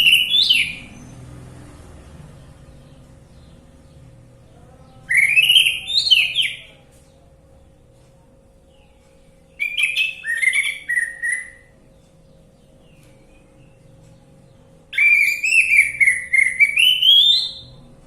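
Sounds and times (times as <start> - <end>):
thrush singing whistled notes: 0.0 - 1.2, 5.1 - 6.7, 9.6 - 11.7, 14.9 - 17.9
faint steady hum: 0.0 - 18.0.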